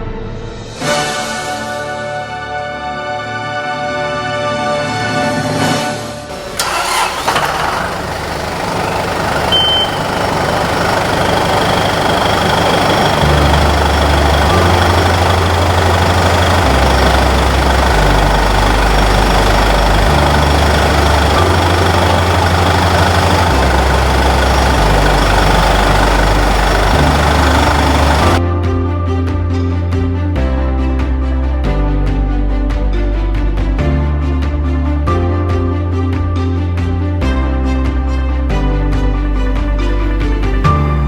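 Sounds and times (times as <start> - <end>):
tractor diesel engine running: 6.3 - 28.4
short high beep: 9.5 - 10.1.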